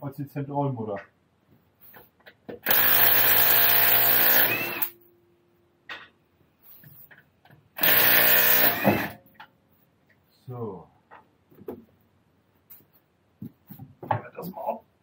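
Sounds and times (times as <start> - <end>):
impact wrench running: 2.6 - 5.0, 7.8 - 9.2.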